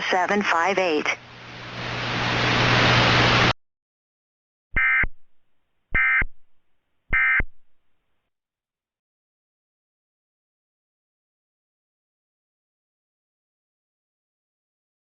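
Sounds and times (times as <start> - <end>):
hiss with low hum: 0.0 - 3.6
digital data tone bursts: 4.8 - 5.2, 6.0 - 6.3, 7.1 - 7.6.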